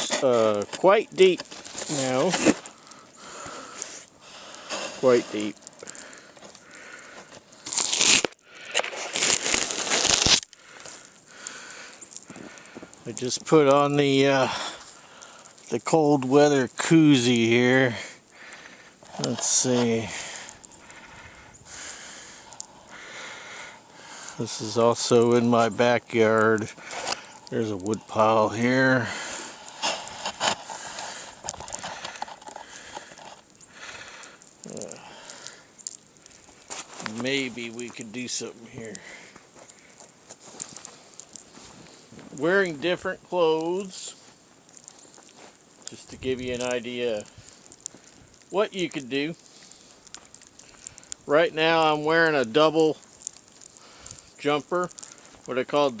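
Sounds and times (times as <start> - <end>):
material crinkling and rustling: 0.0 - 3.1, 4.8 - 11.1, 19.0 - 21.4, 24.4 - 33.5, 35.8 - 56.0
footsteps crunching through snow: 36.4 - 38.3, 39.4 - 42.8, 45.0 - 45.6.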